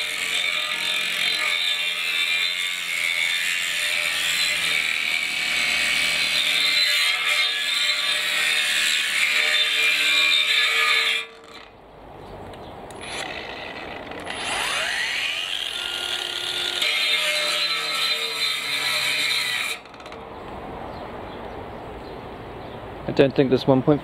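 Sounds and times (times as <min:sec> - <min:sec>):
angle grinder cutting: 0:00.0 - 0:11.8, 0:12.9 - 0:20.3.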